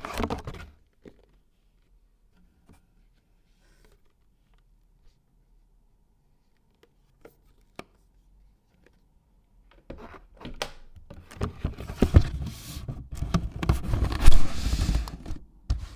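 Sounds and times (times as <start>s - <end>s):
packaging rustling and scraping: 11.4s - 15.9s.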